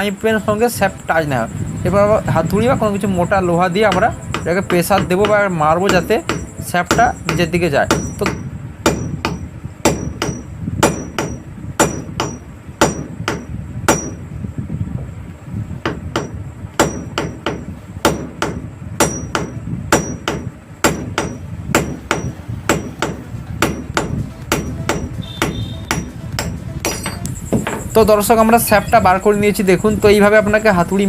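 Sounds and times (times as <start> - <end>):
hammer striking metal shaft: 3.7 - 14.2, 15.9 - 28.1.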